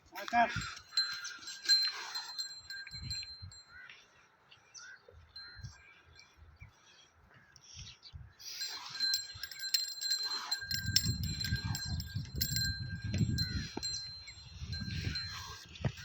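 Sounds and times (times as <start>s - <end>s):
small metal bells jingling: 0.2s - 3.9s, 8.4s - 16.0s.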